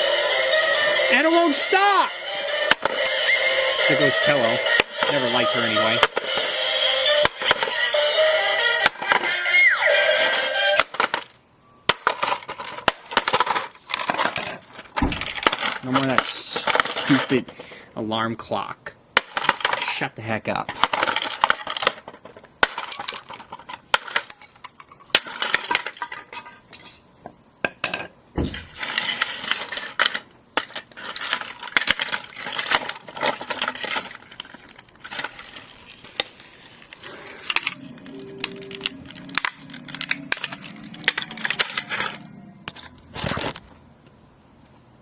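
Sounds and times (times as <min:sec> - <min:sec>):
plastic pieces clattering: 0:02.7 - 0:03.1, 0:04.8 - 0:06.6, 0:07.2 - 0:07.8, 0:08.8 - 0:09.5, 0:10.2 - 0:17.8, 0:19.2 - 0:26.5, 0:28.4 - 0:43.8.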